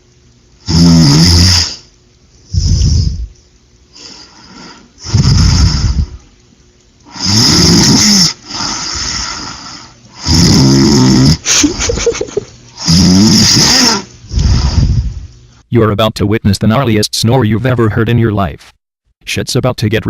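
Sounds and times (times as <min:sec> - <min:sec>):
person snoring loudly: 0:00.6 - 0:01.9, 0:02.5 - 0:03.4, 0:04.0 - 0:06.3, 0:07.1 - 0:11.9, 0:12.8 - 0:15.3
quiet breathing: 0:01.8 - 0:06.4, 0:08.4 - 0:10.2, 0:14.2 - 0:15.6.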